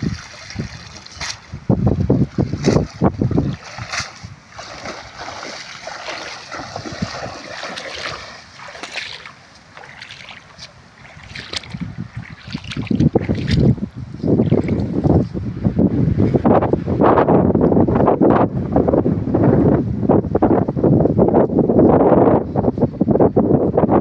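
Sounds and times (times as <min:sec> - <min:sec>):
water splashing: 0:00.0 - 0:15.2
wind buffeting microphone: 0:00.0 - 0:24.0.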